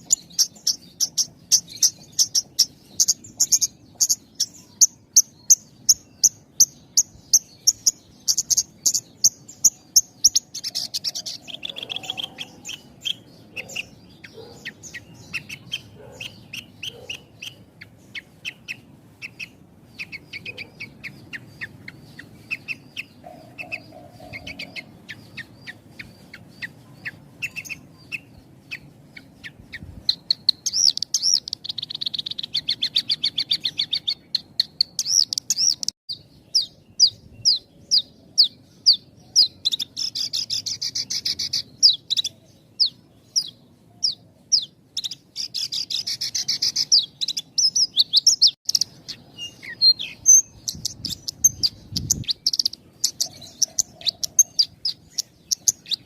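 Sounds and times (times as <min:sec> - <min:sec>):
bird chirping in quick runs: 0:00.0 - 0:35.9.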